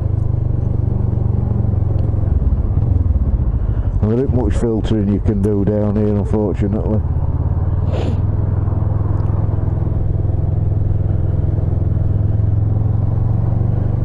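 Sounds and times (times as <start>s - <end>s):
motorcycle engine running: 0.0s - 14.0s
brief hiss: 7.9s - 8.2s.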